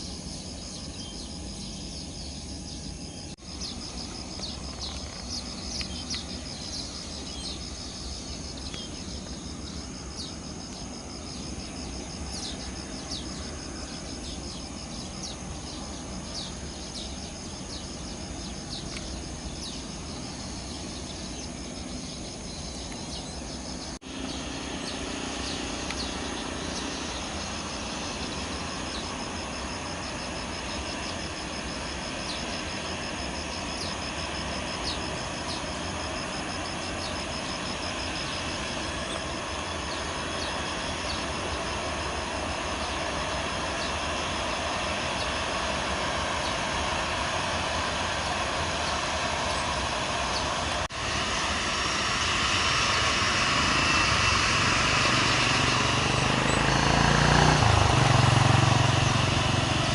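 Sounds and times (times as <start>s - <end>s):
bird chirps: 0.0s - 29.2s
insects trilling: 0.0s - 59.9s
low steady rumble: 0.0s - 59.9s.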